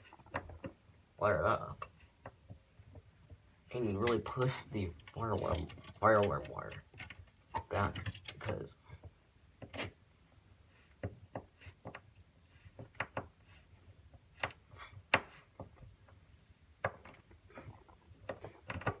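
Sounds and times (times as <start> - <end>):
hands clicking and knocking: 1.8 - 10.0, 12.7 - 13.4, 14.1 - 16.2.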